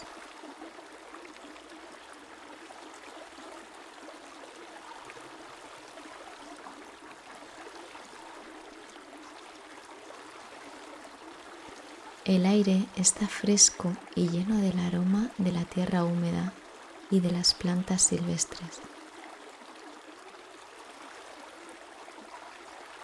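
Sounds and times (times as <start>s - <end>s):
river water flowing: 0.0s - 23.0s.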